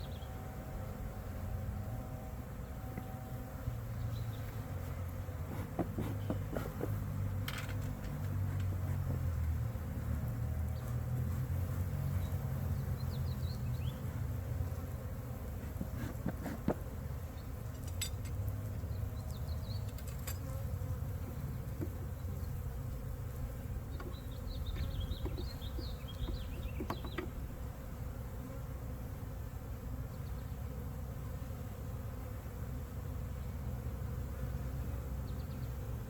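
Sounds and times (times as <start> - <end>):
bees buzzing: 0.0 - 36.0.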